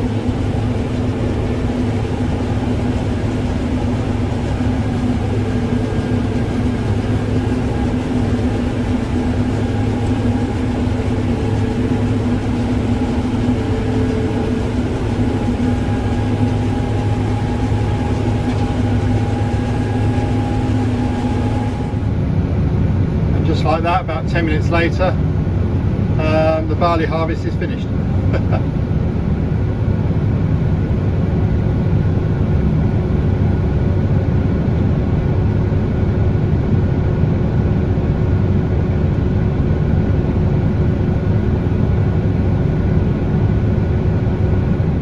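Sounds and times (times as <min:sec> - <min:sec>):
steady tones: 0:00.0 - 0:22.2
combine harvester drone: 0:00.0 - 0:45.0.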